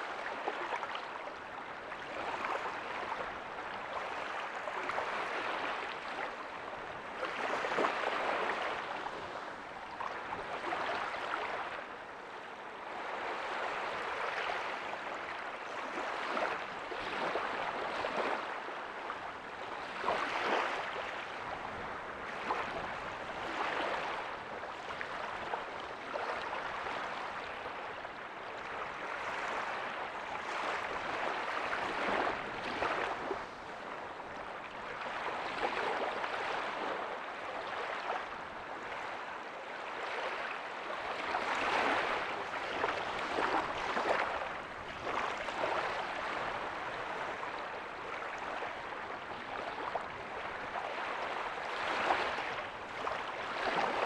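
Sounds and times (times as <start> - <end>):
ocean waves breaking on beach: 0.0 - 54.0.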